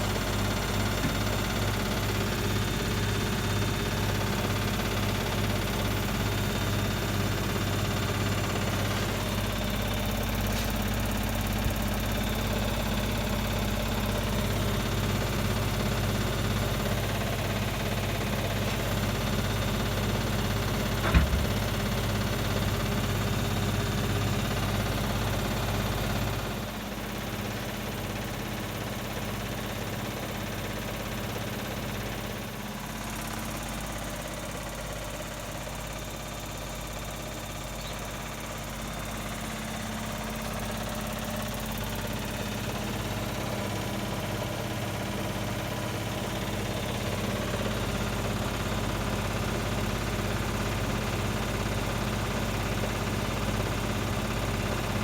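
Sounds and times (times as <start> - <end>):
washing machine spinning unbalanced: 20.8 - 23.0.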